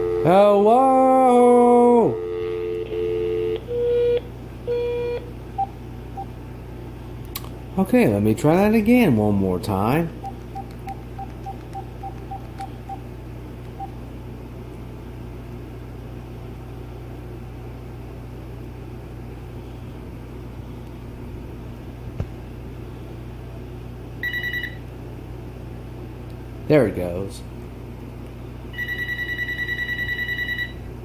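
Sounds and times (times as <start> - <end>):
electronic phone ringing: 0.0 - 0.4, 2.1 - 6.3, 10.2 - 13.0, 13.8 - 14.0, 24.2 - 24.8, 28.8 - 30.8
steady low hum: 0.0 - 28.8
telephone keypad beeps: 10.2 - 13.0.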